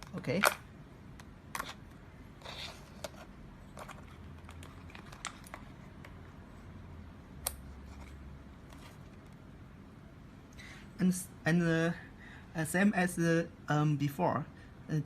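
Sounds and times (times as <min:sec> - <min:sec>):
cable handling clicks and rustles: 0:00.0 - 0:06.3.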